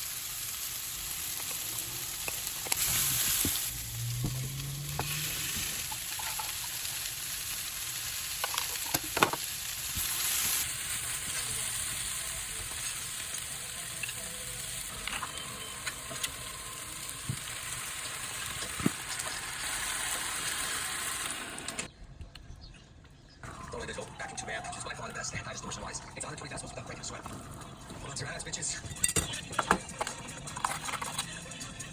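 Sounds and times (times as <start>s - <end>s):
food sizzling in a pan: 0.0s - 21.9s.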